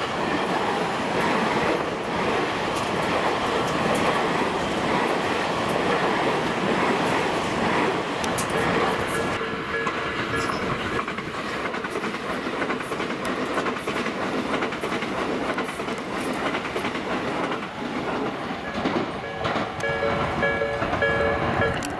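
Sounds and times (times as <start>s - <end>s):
electric train passing: 0.0s - 21.9s
crossing warning bell ringing: 8.6s - 11.3s, 18.6s - 21.9s.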